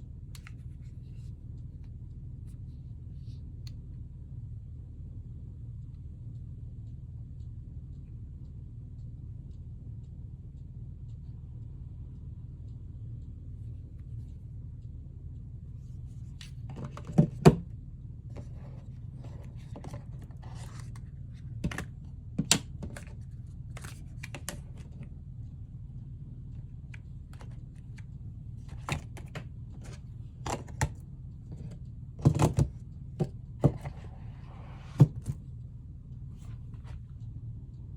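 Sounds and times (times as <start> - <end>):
steady low hum: 0.0 - 37.9
taps and clicks on packaging: 18.3 - 23.1, 23.8 - 25.0.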